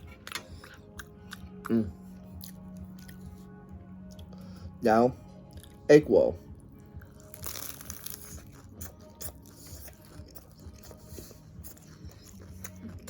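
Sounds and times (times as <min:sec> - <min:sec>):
crunchy chewing: 0:07.0 - 0:13.0.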